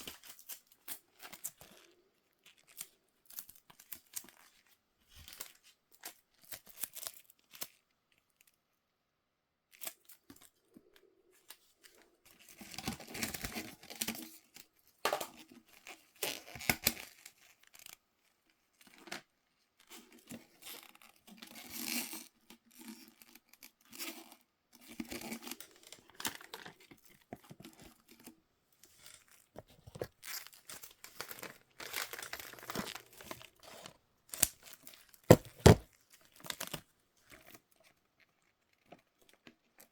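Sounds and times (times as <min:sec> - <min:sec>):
packaging tearing and crinkling: 0:29.7 - 0:33.3.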